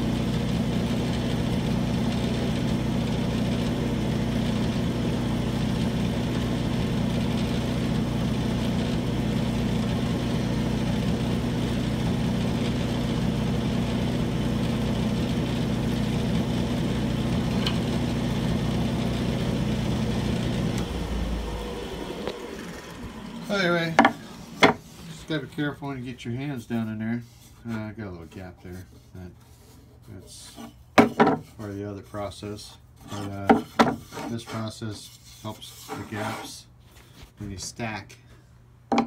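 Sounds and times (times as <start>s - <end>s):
lathe motor hum: 0.0s - 26.0s
sander whirring hiss: 0.0s - 27.6s.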